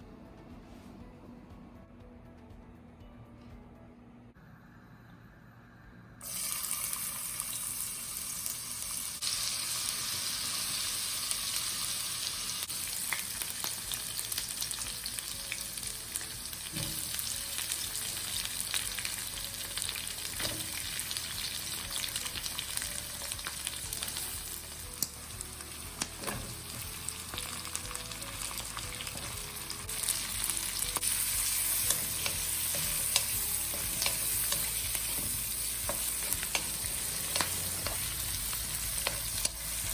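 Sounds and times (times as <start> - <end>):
food sizzling in oil: 6.2 - 39.9
utensil clicking against pan: 35.9 - 38.0.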